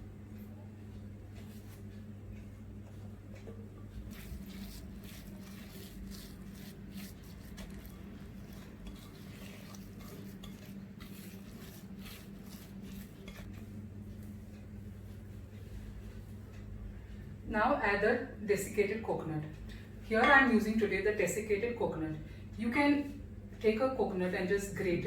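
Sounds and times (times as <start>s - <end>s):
steady low hum: 0.0s - 25.0s
utensil scraping mixing bowl: 4.1s - 13.7s.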